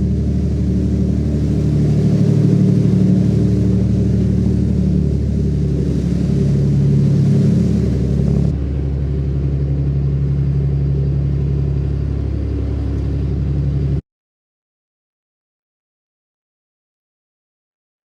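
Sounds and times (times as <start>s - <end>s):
boat engine running: 0.0s - 14.0s.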